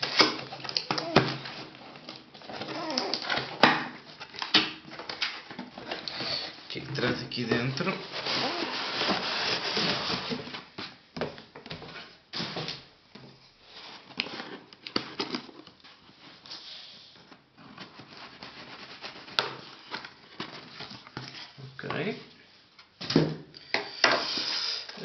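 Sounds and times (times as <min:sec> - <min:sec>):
packaging rustling: 0:00.0 - 0:06.7, 0:07.3 - 0:10.7.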